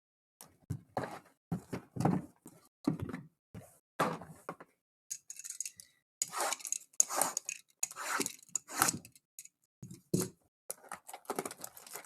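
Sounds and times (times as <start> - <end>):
packaging tearing and crinkling: 10.8 - 12.0.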